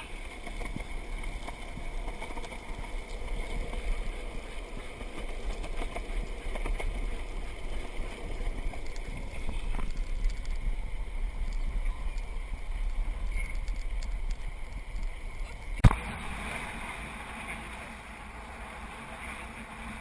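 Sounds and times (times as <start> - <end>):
wind rumbling on microphone: 0.0 - 20.0
water rushing and splashing: 15.6 - 20.0.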